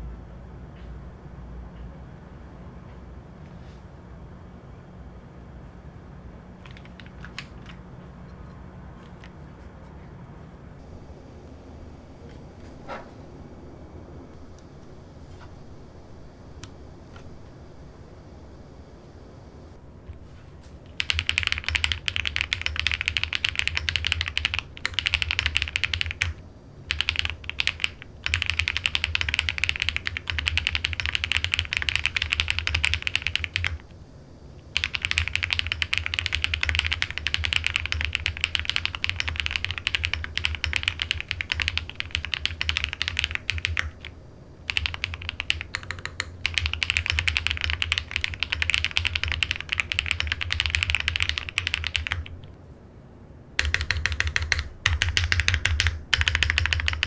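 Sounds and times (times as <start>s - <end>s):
mechanical keyboard typing: 6.6s - 9.5s, 20.9s - 33.9s, 34.7s - 52.6s, 53.6s - 57.0s.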